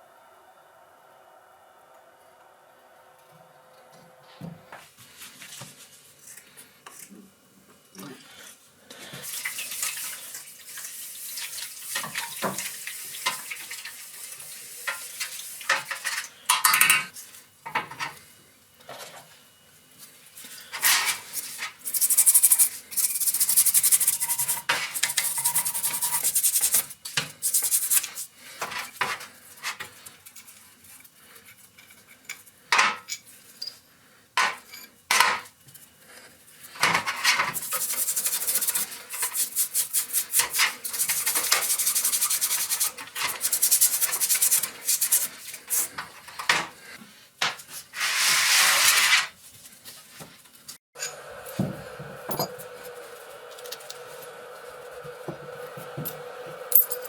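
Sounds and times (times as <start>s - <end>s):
steady hum: 51.0s - 57.0s.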